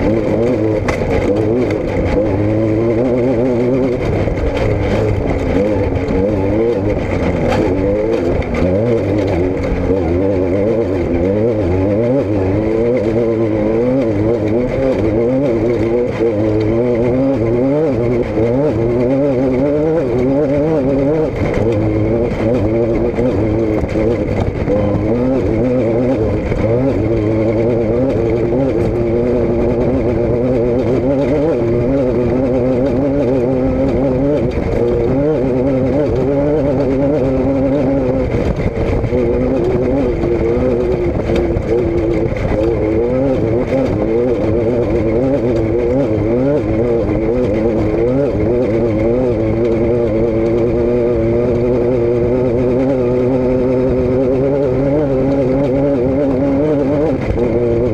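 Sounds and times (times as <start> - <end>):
vehicle engine revving: 0.0 - 57.9.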